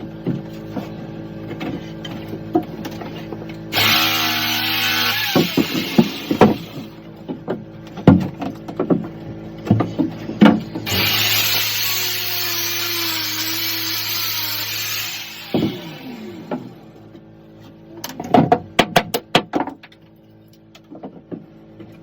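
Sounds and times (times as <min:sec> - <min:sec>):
power tool running: 0:03.7 - 0:07.0, 0:10.8 - 0:17.0.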